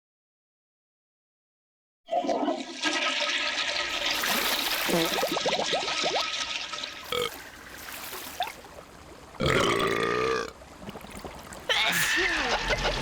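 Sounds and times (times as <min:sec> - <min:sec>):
water rushing and bubbling: 0:02.1 - 0:13.0
burp-like vocal noise: 0:07.0 - 0:07.4, 0:09.4 - 0:13.0.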